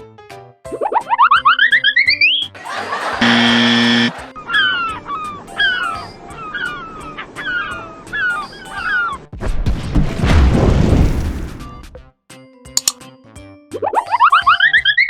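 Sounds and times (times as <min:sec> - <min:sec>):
bird calling: 0:03.0 - 0:09.2.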